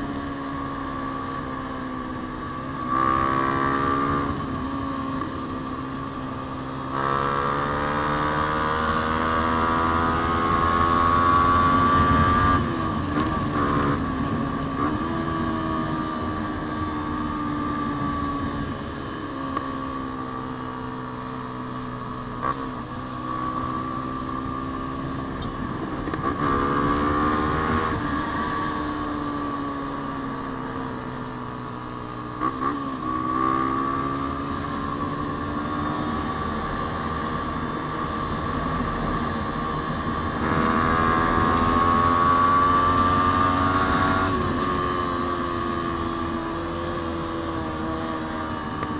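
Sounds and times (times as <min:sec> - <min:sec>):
motorcycle engine accelerating: 0:00.0 - 0:48.9.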